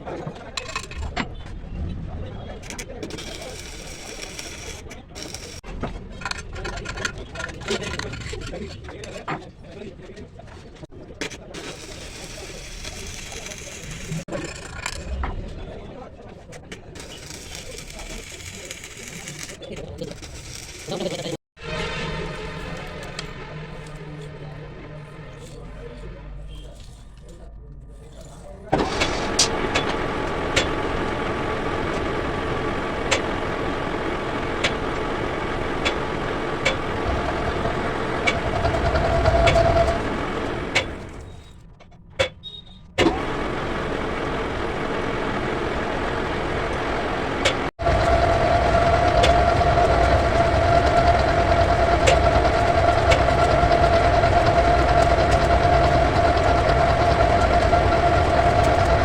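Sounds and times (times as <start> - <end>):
metal lathe running: 28.8 - 41.4, 43.0 - 59.0
steady high whine: 28.8 - 41.5, 43.0 - 59.0.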